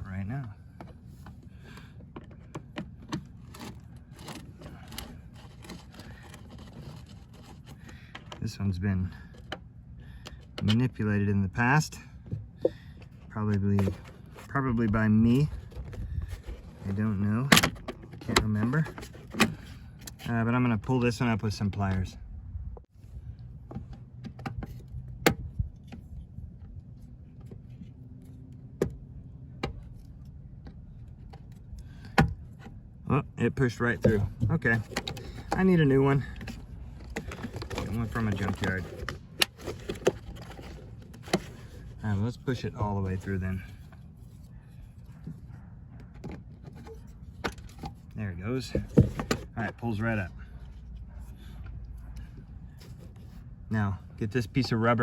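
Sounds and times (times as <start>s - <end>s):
plastic trim clicks and scrapes: 2.2s - 8.4s, 34.0s - 42.0s.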